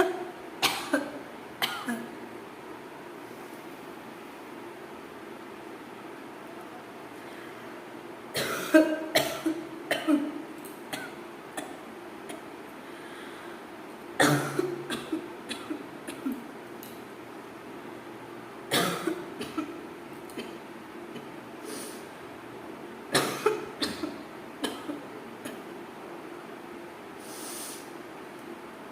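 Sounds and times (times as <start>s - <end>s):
person coughing: 0.0s - 2.1s, 8.4s - 11.7s, 14.2s - 16.4s, 18.7s - 19.8s, 23.2s - 25.6s.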